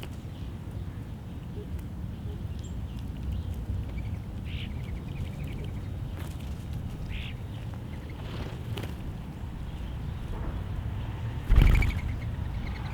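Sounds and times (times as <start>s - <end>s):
birds chirping: 0.3s - 12.9s
low rumble: 9.2s - 12.9s
bird trill: 11.5s - 12.9s.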